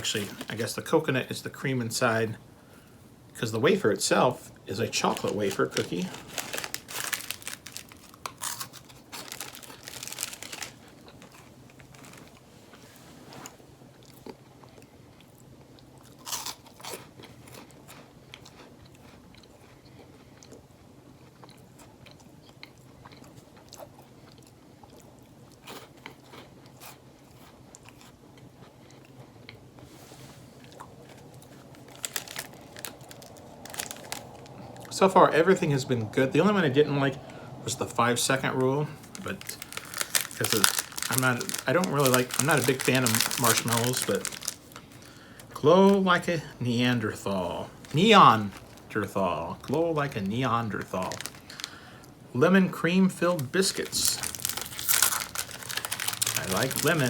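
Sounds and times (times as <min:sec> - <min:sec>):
person crunching wafer cookies: 0:00.0 - 0:00.8, 0:03.6 - 0:12.5, 0:14.0 - 0:29.2, 0:30.6 - 0:35.0, 0:37.7 - 0:52.2, 0:53.2 - 0:57.0
person chewing: 0:05.1 - 0:12.5, 0:14.0 - 0:29.3, 0:39.0 - 0:45.6, 0:51.0 - 0:52.2, 0:53.8 - 0:57.0.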